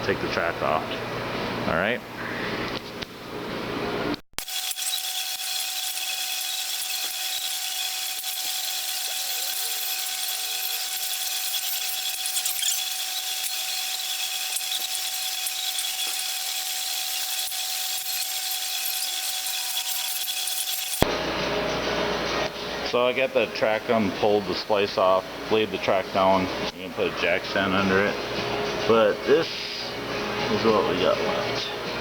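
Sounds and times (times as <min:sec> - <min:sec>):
machine whining: 0:04.4 - 0:21.7.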